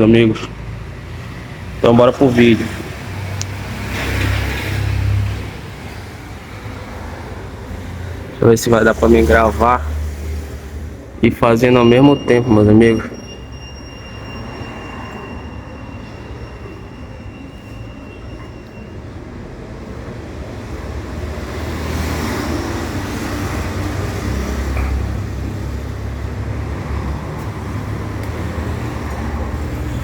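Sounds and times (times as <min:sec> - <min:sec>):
faint high whine: 0:11.4 - 0:19.0.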